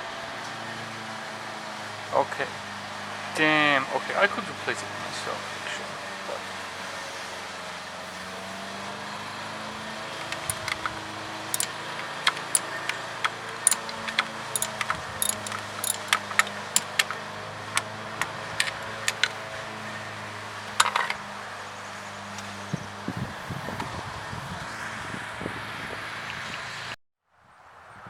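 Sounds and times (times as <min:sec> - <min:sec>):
metal tools clinking: 0:10.2 - 0:17.2.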